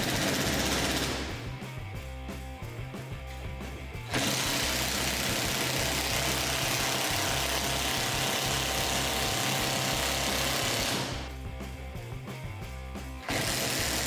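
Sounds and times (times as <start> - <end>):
music with bass beat: 0.0 - 14.0.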